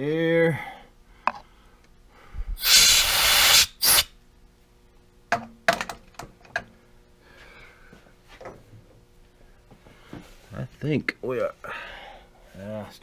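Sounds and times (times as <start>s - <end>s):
compressed air blow gun hissing: 2.6s - 4.1s.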